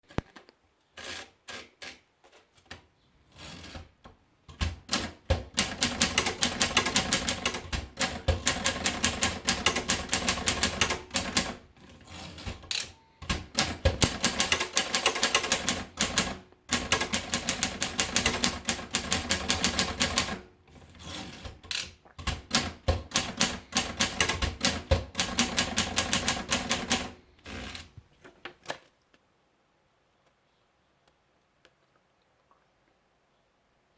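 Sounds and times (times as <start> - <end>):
typewriter keys clacking: 4.5 - 20.4, 21.0 - 27.9.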